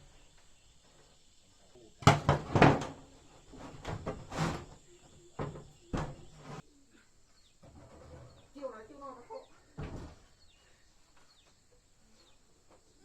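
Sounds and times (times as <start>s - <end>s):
irregular knocks and clatters: 2.0s - 6.6s, 9.7s - 10.5s.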